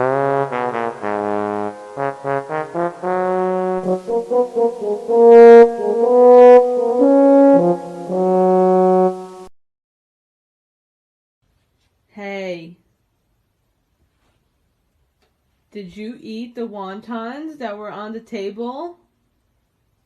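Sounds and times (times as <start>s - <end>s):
brass band music: 0.0s - 9.5s.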